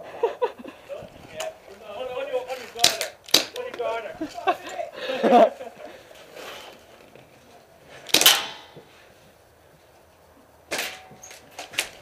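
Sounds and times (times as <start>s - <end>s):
airsoft gun shots: 2.8s - 3.6s, 8.1s - 8.8s.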